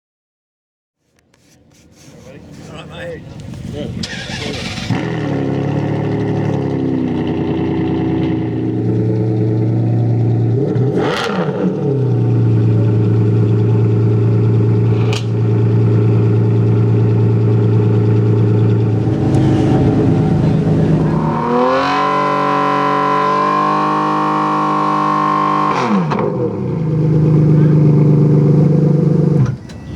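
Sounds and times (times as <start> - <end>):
sports car engine idling: 15.8 - 22.9
engine throttle blip: 18.8 - 23.9.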